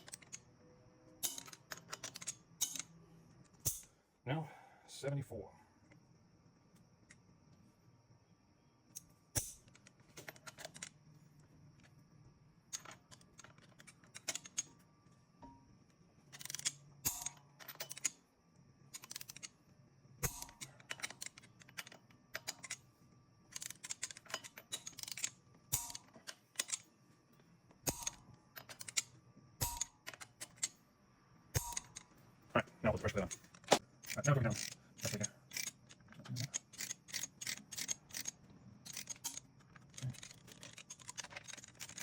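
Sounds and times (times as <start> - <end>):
torque wrench click: 23.6 - 26.0, 27.9 - 29.0, 29.6 - 30.7, 31.6 - 32.0.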